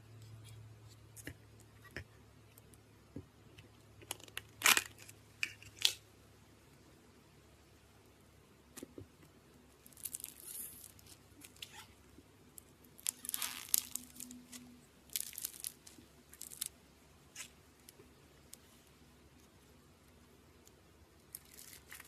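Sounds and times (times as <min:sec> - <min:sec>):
slime crackling and popping: 0:09.8 - 0:11.8, 0:12.6 - 0:18.6, 0:21.3 - 0:22.0.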